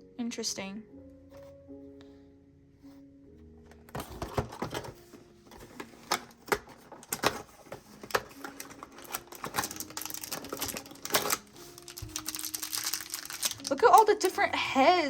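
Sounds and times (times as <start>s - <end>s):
packaging clicks and crinkles: 3.8s - 14.5s.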